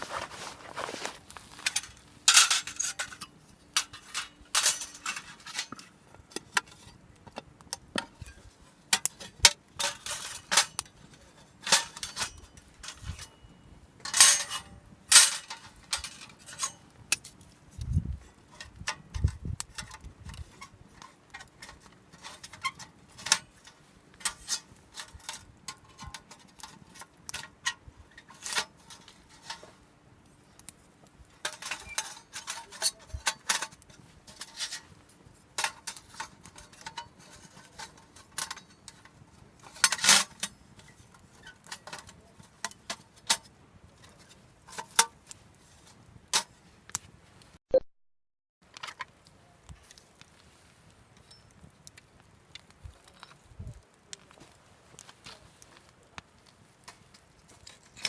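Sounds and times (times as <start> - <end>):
metal cookware clinking: 0.1 - 5.8.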